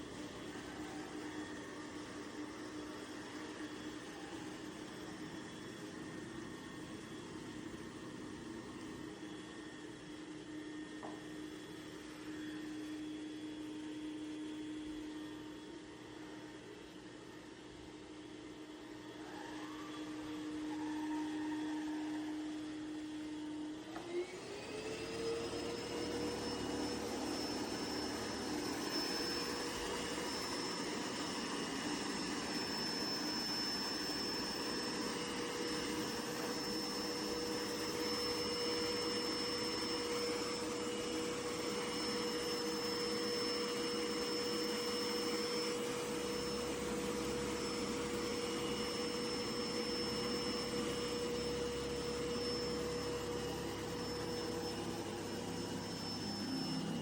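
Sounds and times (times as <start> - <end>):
robot vacuum running: 18.2 - 57.0.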